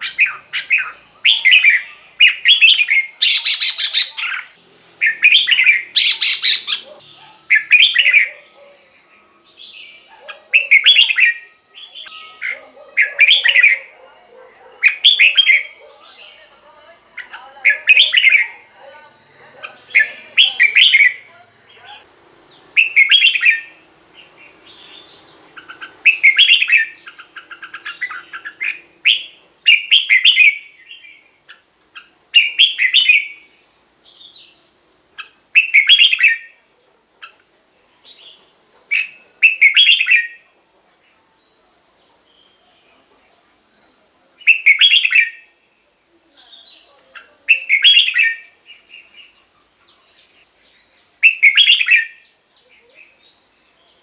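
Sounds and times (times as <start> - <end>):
bird warbling song: 0.0 - 36.6, 37.2 - 40.4, 43.8 - 45.6, 46.4 - 54.0
faint high-pitched tone: 11.0 - 13.0.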